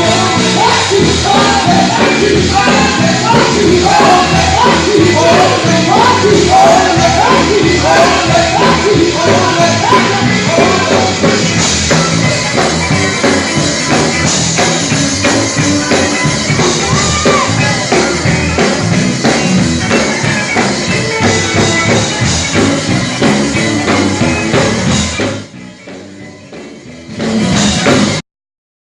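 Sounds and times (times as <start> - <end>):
gospel vocal group singing: 0.0 - 12.7
band accompaniment: 0.0 - 28.2.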